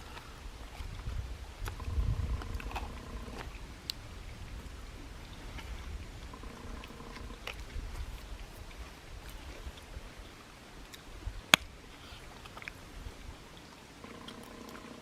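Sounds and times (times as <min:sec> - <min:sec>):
faint steady hum: 0:00.0 - 0:15.0
low rumble: 0:01.0 - 0:08.2.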